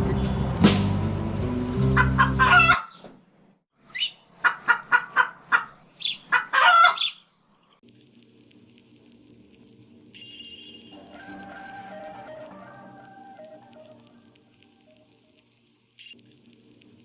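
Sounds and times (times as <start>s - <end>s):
band music chord: 0.0s - 2.4s
chicken clucking: 2.0s - 3.0s, 4.0s - 7.2s.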